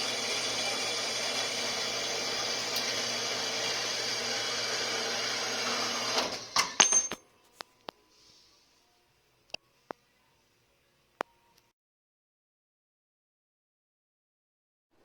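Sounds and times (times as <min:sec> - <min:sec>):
workshop machine hissing and humming: 0:00.0 - 0:06.8.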